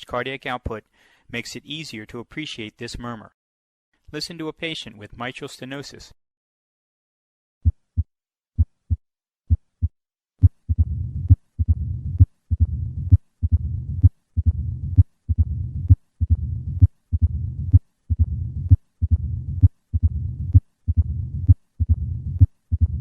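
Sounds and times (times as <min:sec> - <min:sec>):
heartbeat lub-dub: 0:07.6 - 0:23.0
low rumbling heart murmur: 0:10.7 - 0:23.0.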